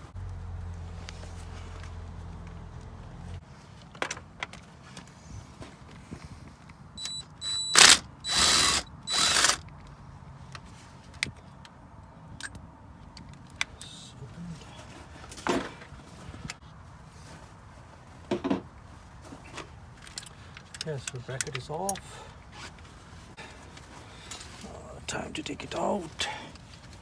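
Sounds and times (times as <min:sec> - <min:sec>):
ratchet wrench clicking: 0:07.0 - 0:09.6.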